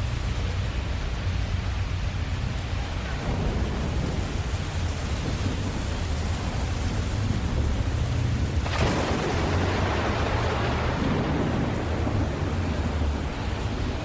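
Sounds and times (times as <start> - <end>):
steady rain: 0.0 - 14.0
low rumble of thunder: 0.1 - 14.0
sharp thunderclap: 3.0 - 14.0.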